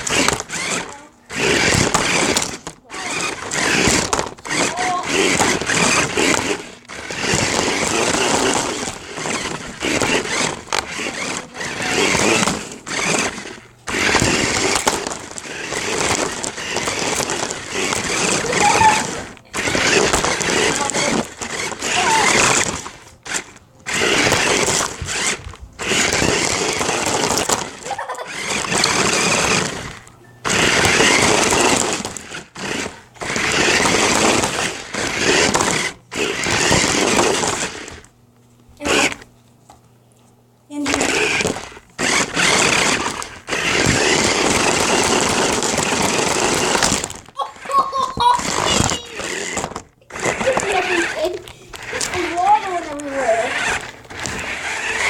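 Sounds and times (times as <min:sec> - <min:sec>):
wheels rattling over ground: 0:00.0 - 0:38.0, 0:40.9 - 0:55.0
toy truck motor whirring: 0:00.0 - 0:38.1, 0:38.8 - 0:39.3, 0:40.7 - 0:55.0.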